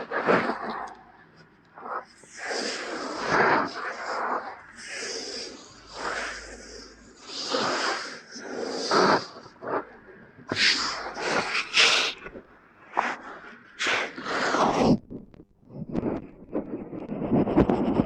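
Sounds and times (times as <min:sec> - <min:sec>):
scratching on microphone: 0:13.8 - 0:18.0.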